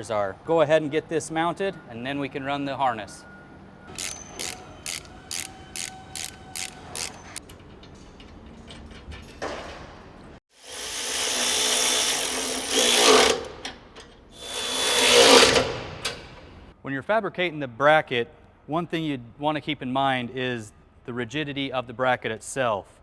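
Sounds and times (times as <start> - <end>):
ratchet wrench clicking: 3.9 - 7.4
power tool running: 10.5 - 13.5, 14.4 - 15.8.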